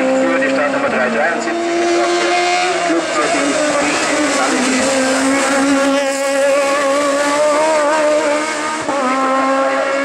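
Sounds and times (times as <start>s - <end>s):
racing car engine at high revs: 0.0s - 10.0s.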